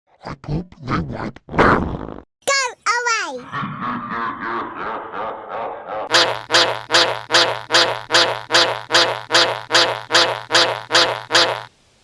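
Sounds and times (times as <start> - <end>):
stuttering sound sample loop: 6.1 - 11.7.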